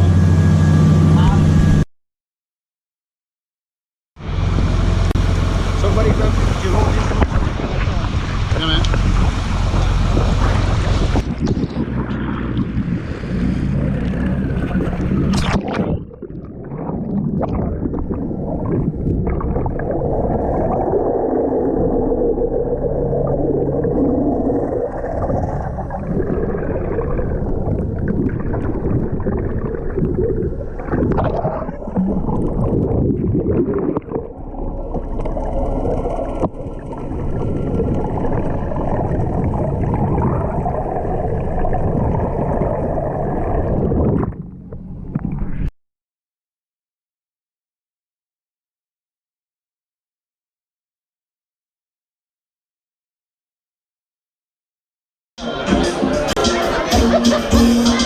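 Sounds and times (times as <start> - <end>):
boat engine running: 0.0 - 1.8, 4.2 - 16.2, 34.2 - 45.2
water rushing past: 4.2 - 44.5.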